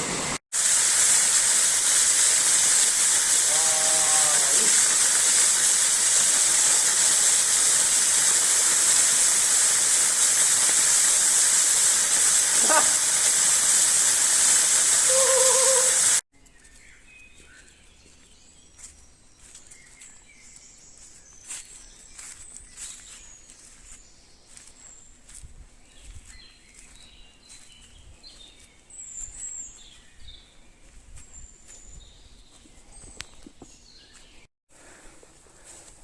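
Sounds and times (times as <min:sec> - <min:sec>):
loud rushing hiss: 0:00.0 - 0:16.2.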